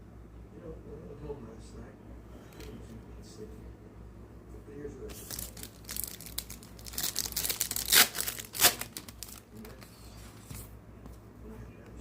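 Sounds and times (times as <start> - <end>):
foil wrapper crinkling and tearing: 5.1 - 9.8.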